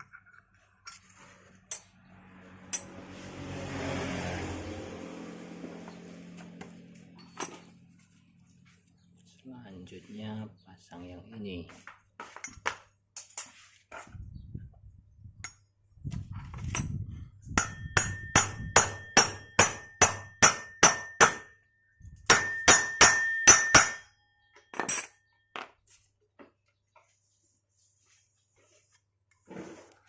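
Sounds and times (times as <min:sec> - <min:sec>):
hammer striking metal: 0:02.7 - 0:03.0, 0:17.6 - 0:21.6, 0:22.2 - 0:25.2.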